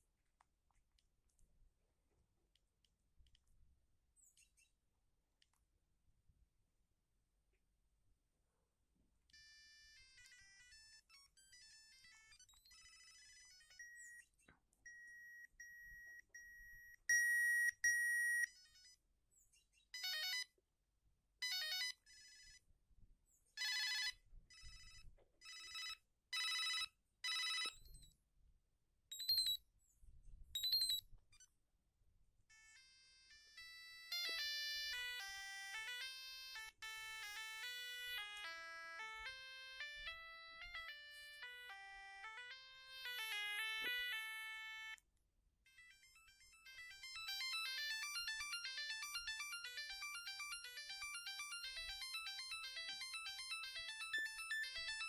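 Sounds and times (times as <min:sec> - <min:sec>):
mobile phone ringtones: 0:09.4 - 0:14.2, 0:14.9 - 0:19.0, 0:20.0 - 0:20.6, 0:21.4 - 0:22.6, 0:23.6 - 0:28.0, 0:29.1 - 0:29.6, 0:30.6 - 0:31.0, 0:32.5 - 0:45.0, 0:45.7 - 0:55.0.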